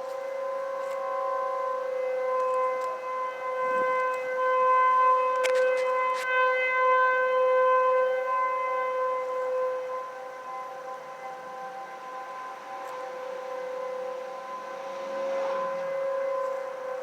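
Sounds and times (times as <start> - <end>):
tornado warning sirens: 0.0 - 17.0.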